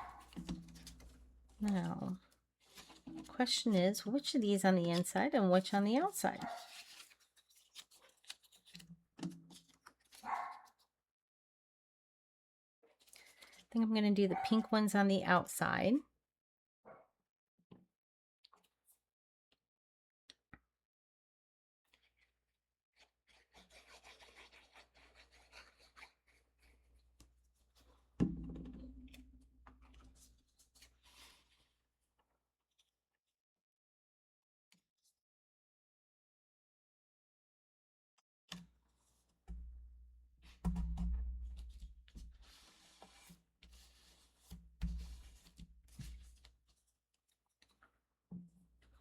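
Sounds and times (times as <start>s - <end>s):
paper and card rustling: 0.0s - 10.9s, 23.0s - 28.0s, 29.8s - 31.8s, 41.4s - 47.9s.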